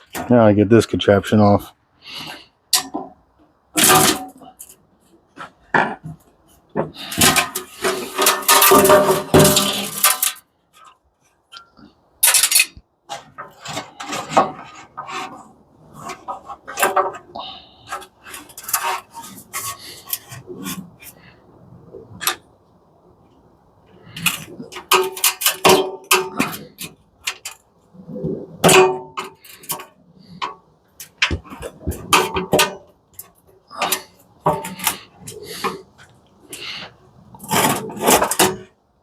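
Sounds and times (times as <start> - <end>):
metal parts clattering and scraping: 2.1 - 21.3, 24.0 - 38.8
knocks and clinks of parts: 2.7 - 15.4, 24.1 - 27.7, 28.6 - 38.8.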